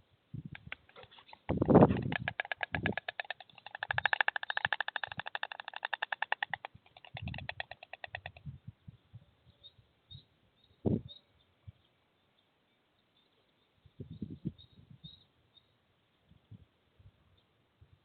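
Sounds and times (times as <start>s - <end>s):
storks clattering bills: 0.8s - 8.4s.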